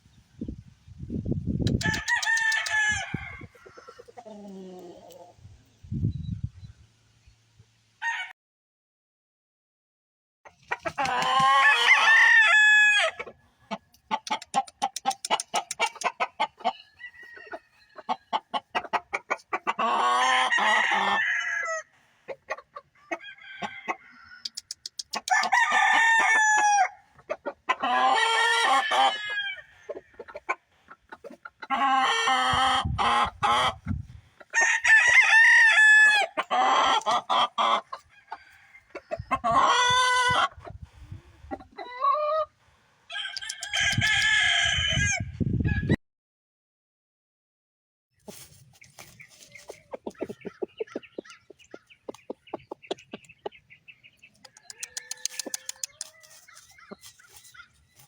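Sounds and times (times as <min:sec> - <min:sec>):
roosters crowing: 0:01.7 - 0:05.3, 0:08.0 - 0:08.3, 0:10.8 - 0:13.4, 0:14.5 - 0:18.6, 0:19.7 - 0:22.0, 0:23.0 - 0:30.4, 0:31.7 - 0:40.6, 0:43.1 - 0:45.3, 0:54.3 - 0:58.0
chicken clucking: 0:01.7 - 0:05.4, 0:10.5 - 0:12.2, 0:13.0 - 0:21.3, 0:22.2 - 0:42.5, 0:43.2 - 0:44.2, 0:48.2 - 0:58.0.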